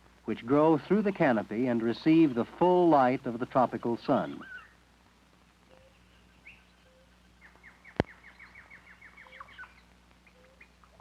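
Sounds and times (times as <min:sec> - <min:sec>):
bird chirps: 0:04.1 - 0:04.8, 0:05.7 - 0:11.0.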